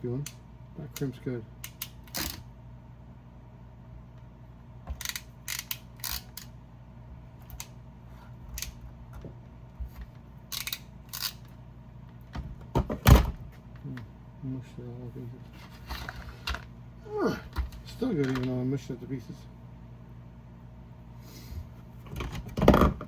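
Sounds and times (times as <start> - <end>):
metal clicks of crimping tool: 1.0 - 2.4, 5.0 - 6.5, 10.5 - 11.5.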